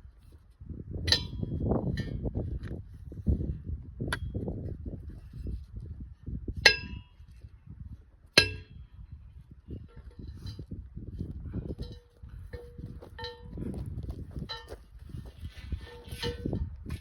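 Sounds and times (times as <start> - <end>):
wind on microphone: 0.0 - 17.0
post driver clanging on steel post: 8.4 - 8.8.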